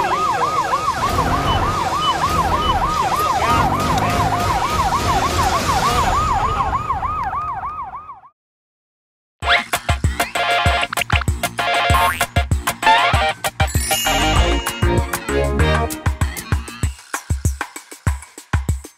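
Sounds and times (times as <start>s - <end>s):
ambulance siren yelping: 0.0s - 8.3s
music: 9.4s - 18.9s.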